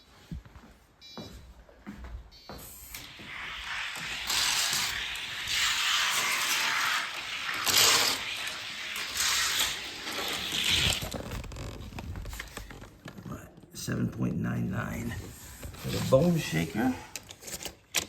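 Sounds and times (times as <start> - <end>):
toy cars rolling on track: 2.9 - 11.5.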